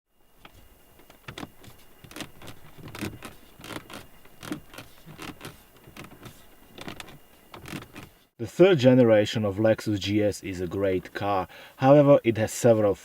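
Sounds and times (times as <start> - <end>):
dashboard plastics rattling: 0.4 - 8.3.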